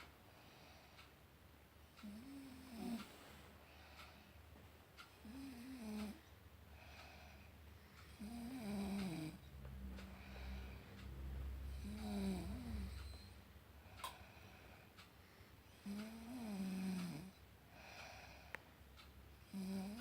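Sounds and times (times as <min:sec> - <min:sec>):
woman snoring: 0:02.0 - 0:03.1, 0:05.2 - 0:06.2, 0:08.1 - 0:09.4, 0:11.7 - 0:13.1, 0:15.8 - 0:17.4, 0:19.5 - 0:20.0.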